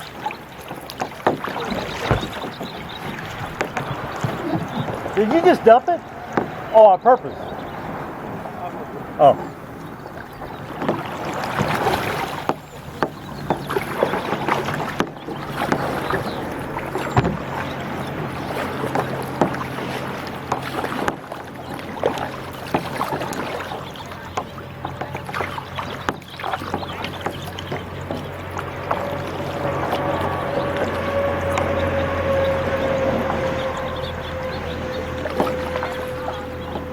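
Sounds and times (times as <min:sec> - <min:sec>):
paddle splashes and drips: 0:00.0 - 0:36.9
water splashing around kayaks: 0:00.0 - 0:36.9
low steady hum: 0:23.3 - 0:36.9.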